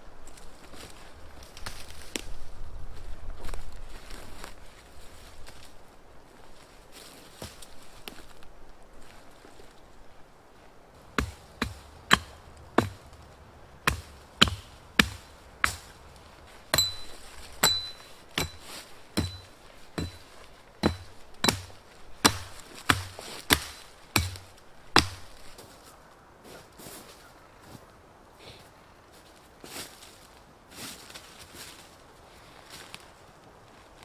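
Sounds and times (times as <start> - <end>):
hand tool striking: 11.0 - 25.3
high metallic ring: 16.8 - 20.2.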